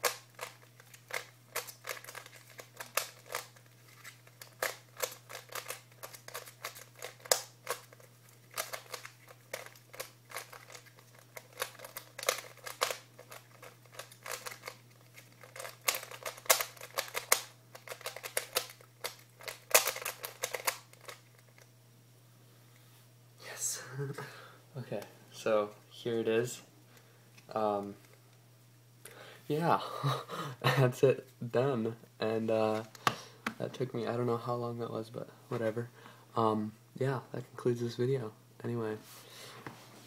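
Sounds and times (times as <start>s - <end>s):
plastic puzzle cube clicking: 8.5s - 14.8s, 15.4s - 21.2s.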